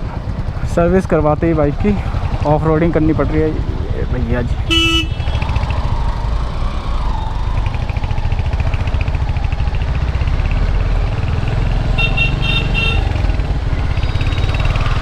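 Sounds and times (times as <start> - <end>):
motorcycle engine running: 0.0 - 15.0
vehicle horn short beeps: 4.7 - 5.4, 12.0 - 13.2.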